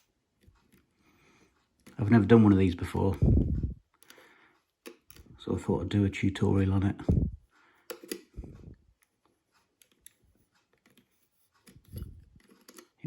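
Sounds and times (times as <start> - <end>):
screwdriver clicks and taps: 4.8 - 5.3, 7.9 - 8.3, 9.8 - 13.0
plastic parts being handled: 7.8 - 8.4, 9.0 - 13.0.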